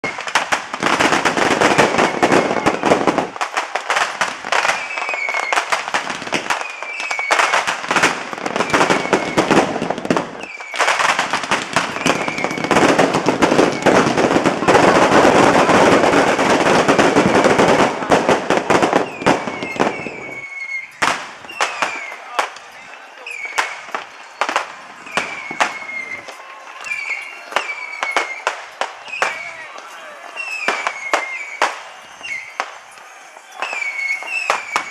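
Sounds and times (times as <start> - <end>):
firecrackers crackling bangs: 0.0 - 34.9
high falling whistles: 1.6 - 3.1, 4.5 - 5.8, 6.5 - 7.7, 8.5 - 9.6, 10.4 - 15.4, 18.9 - 34.9.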